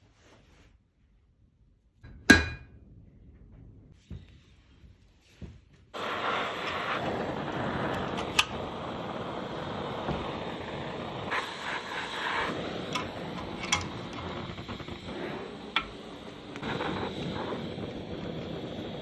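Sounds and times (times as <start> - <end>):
steady rushing noise: 6.0 - 19.0.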